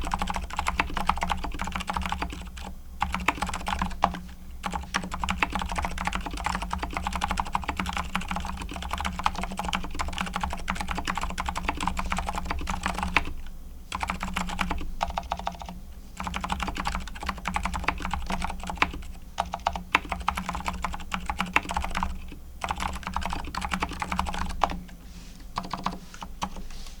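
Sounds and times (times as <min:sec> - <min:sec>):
fast keyboard typing: 0:00.0 - 0:24.9, 0:25.6 - 0:26.6.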